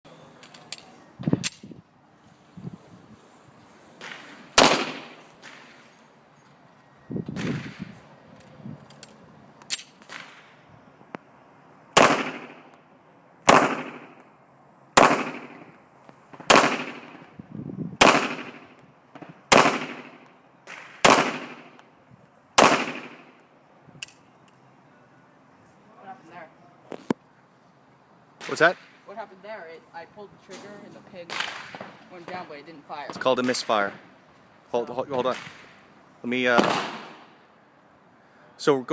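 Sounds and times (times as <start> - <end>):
pistol shots: 4.0 - 5.8, 12.0 - 12.7, 13.5 - 14.2, 15.0 - 15.7, 16.4 - 17.3, 18.0 - 18.8, 19.5 - 21.8, 22.6 - 23.4, 36.5 - 37.4
faint distant gunshots: 4.0 - 5.9, 12.0 - 12.7, 13.5 - 14.2, 15.0 - 15.7, 16.4 - 17.3, 18.0 - 21.8, 22.6 - 23.4, 36.5 - 37.4.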